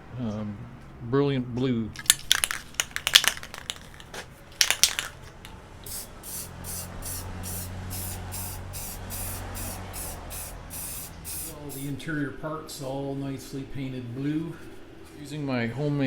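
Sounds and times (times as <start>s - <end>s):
spray can rattling: 2.0s - 11.9s
spray can hissing bursts: 4.6s - 5.2s, 5.9s - 11.9s.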